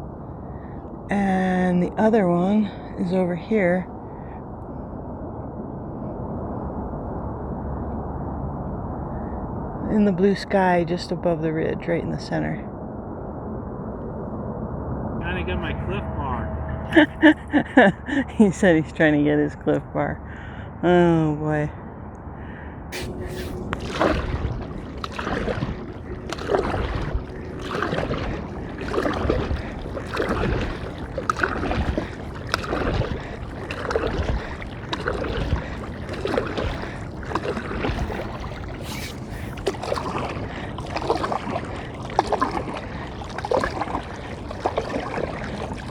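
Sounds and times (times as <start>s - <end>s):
paddle splashing in water: 22.9s - 45.9s.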